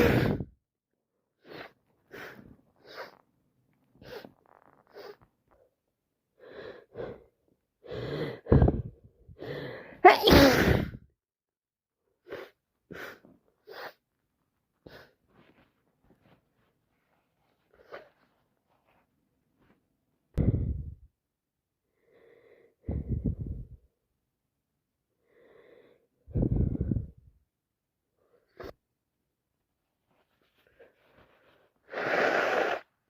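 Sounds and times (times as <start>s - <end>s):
woman sneezing: 10.0s - 11.0s.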